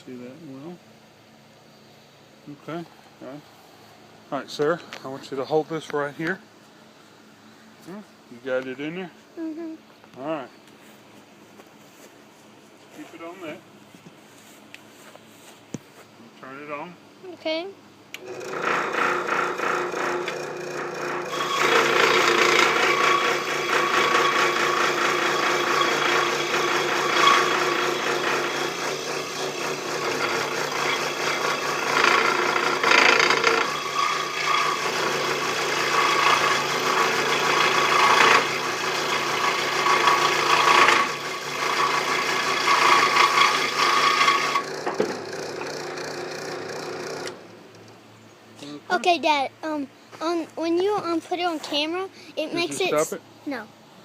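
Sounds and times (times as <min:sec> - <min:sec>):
scroll saw cutting wood: 0:18.2 - 0:47.5
saw motor humming: 0:18.2 - 0:47.9.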